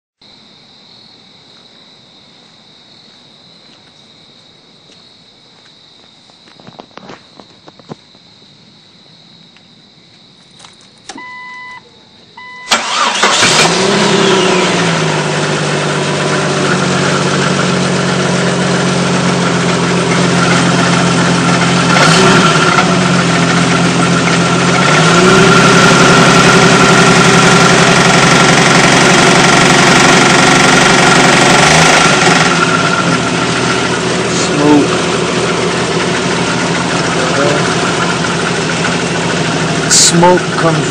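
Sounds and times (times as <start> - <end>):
car engine starting and idling: 10.6 - 40.9
engine clicking noise: 12.7 - 14.9.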